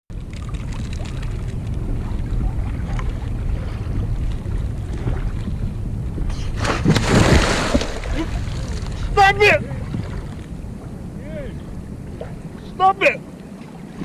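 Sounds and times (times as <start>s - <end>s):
water lapping against kayak: 0.1s - 14.0s
wind buffeting microphone: 0.1s - 14.0s
loud rush of splashing: 6.6s - 9.1s.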